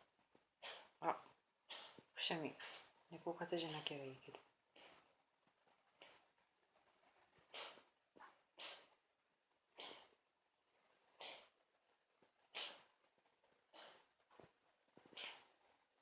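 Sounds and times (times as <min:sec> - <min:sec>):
cat sneezing: 0:00.6 - 0:00.9, 0:01.7 - 0:02.0, 0:07.5 - 0:07.8, 0:08.6 - 0:08.9, 0:09.8 - 0:10.1, 0:11.2 - 0:11.5, 0:12.5 - 0:12.9, 0:13.7 - 0:14.0, 0:15.1 - 0:15.4.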